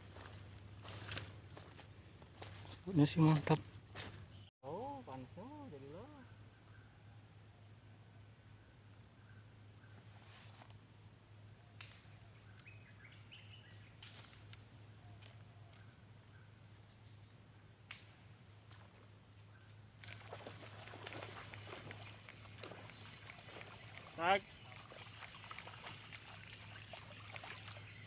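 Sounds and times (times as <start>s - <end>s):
high-pitched insect drone: 4.7s - 6.5s, 20.0s - 28.0s.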